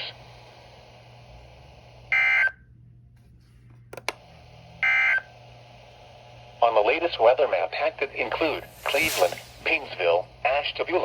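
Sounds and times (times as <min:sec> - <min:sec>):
steady low hum: 0:00.0 - 0:11.0
digital data tone bursts: 0:08.2 - 0:09.9.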